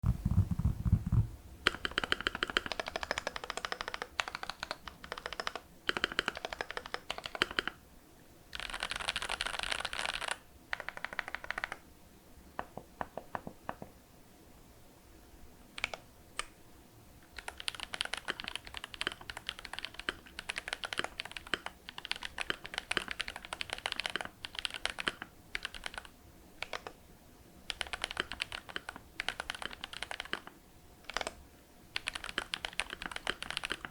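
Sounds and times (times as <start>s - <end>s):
typing on mechanical keyboard: 0.3s - 7.8s, 8.5s - 11.8s, 15.8s - 16.5s, 17.3s - 27.0s, 27.7s - 31.4s, 32.0s - 33.9s.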